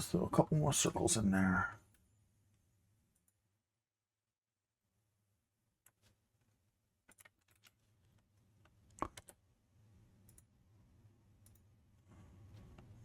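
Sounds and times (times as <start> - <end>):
faint keyboard keystrokes: 7.0 - 9.4.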